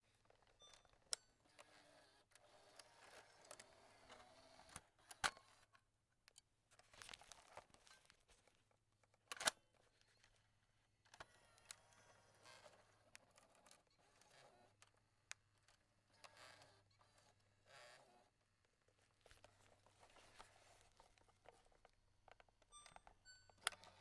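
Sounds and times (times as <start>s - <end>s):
faint rattling and scraping: 18.9s - 22.6s.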